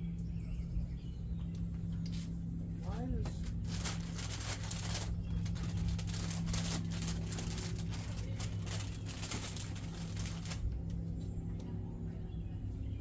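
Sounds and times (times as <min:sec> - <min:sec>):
steady low hum: 0:00.0 - 0:13.0
rustling and handling noise: 0:01.7 - 0:11.3.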